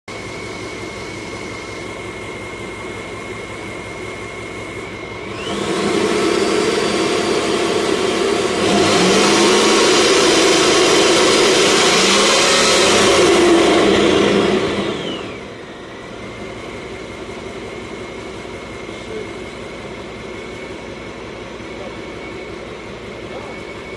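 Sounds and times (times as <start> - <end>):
supercharger whine: 0.1 - 23.9
car engine revving: 4.0 - 18.9.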